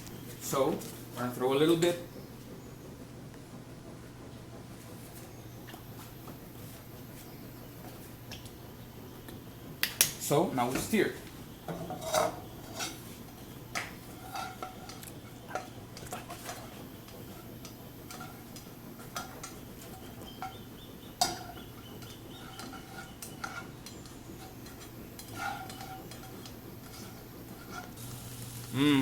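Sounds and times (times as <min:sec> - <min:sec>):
utensil scraping a frying pan: 0:11.6 - 0:28.3.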